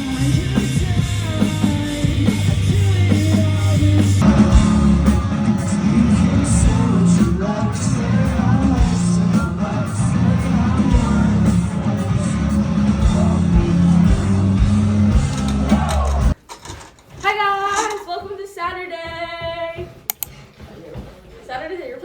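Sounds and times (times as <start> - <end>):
rock music with singing: 0.0 - 16.4.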